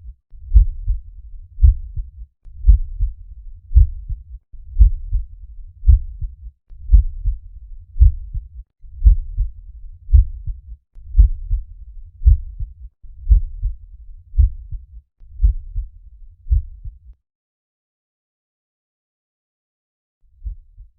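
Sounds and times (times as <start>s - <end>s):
heartbeat lub-dub: 0.4s - 7.4s, 8.0s - 13.8s, 14.4s - 17.2s.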